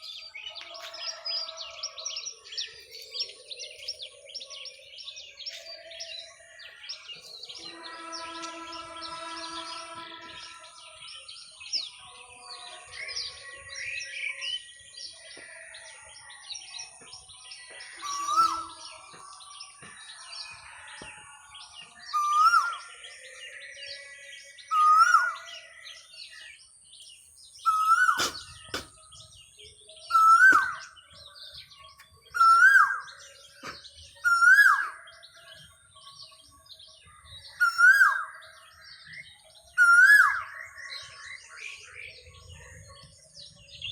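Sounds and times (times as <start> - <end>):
small birds chirping: 0.0 - 43.9
koel calling: 27.7 - 28.9.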